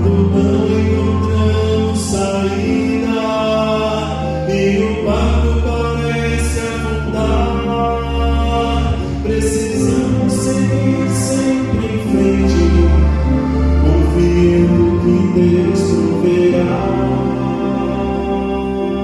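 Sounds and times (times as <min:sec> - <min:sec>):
vocal quartet singing a hymn: 0:00.0 - 0:19.0.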